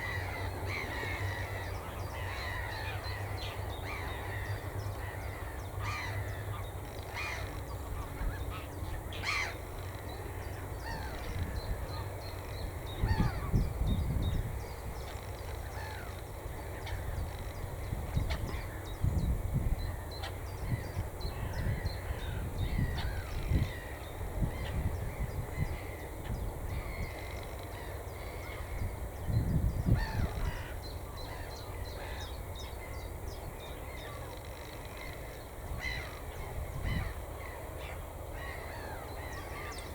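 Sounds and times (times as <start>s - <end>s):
flock of birds calling: 0.0s - 13.6s, 29.9s - 33.0s.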